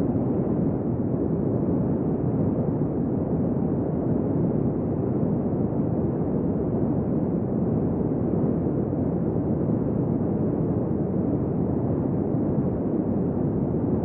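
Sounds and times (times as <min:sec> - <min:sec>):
steady wind rumble: 0:00.0 - 0:14.0.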